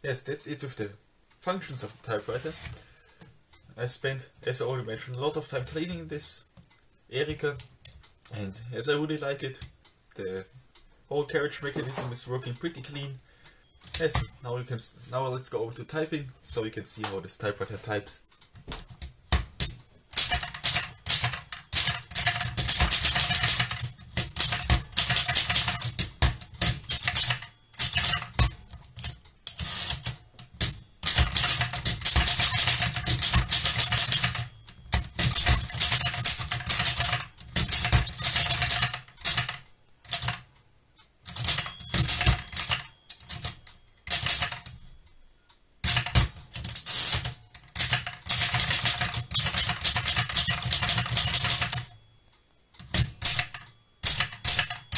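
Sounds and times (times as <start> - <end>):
typewriter typing: 18.8 - 40.5, 41.2 - 44.8, 45.8 - 52.0, 52.8 - 54.9.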